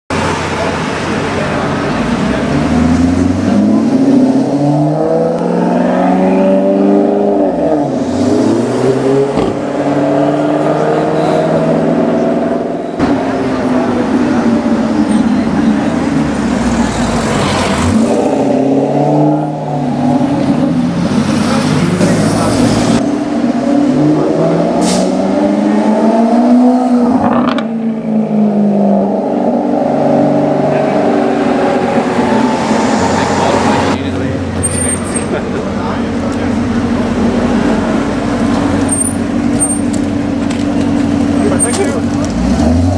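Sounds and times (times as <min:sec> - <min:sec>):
sports car engine accelerating: 0:00.1 - 0:42.9
exhaust crackle: 0:30.6 - 0:42.9.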